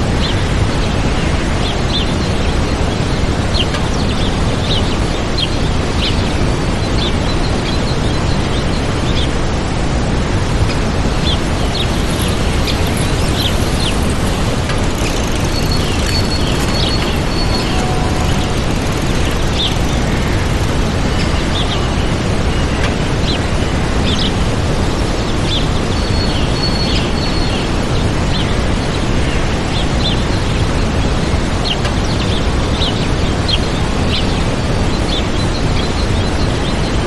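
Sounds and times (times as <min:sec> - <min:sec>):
waterfall rushing: 0:04.4 - 0:25.9
small birds chirping: 0:10.7 - 0:37.0.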